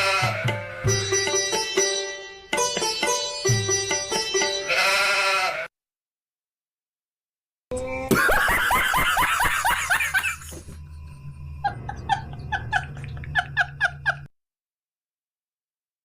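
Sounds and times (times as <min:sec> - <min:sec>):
comic laughter sound effect: 0:07.8 - 0:14.3.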